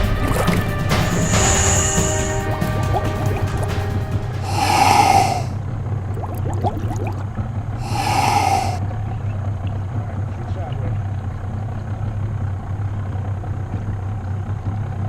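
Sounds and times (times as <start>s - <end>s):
loud whooshes: 1.1s - 5.5s, 7.8s - 8.8s.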